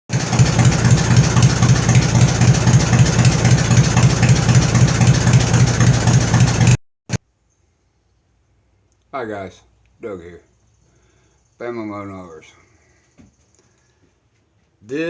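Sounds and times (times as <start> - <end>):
engine running: 0.1 - 6.8.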